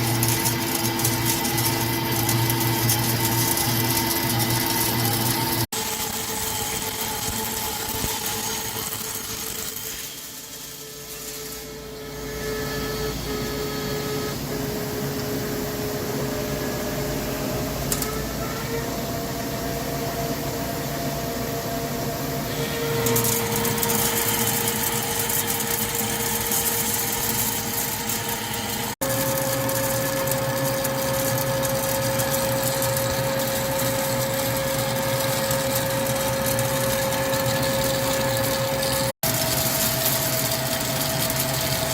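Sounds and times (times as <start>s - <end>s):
lathe machine whine: 0.0s - 41.9s
hiss: 5.8s - 13.8s.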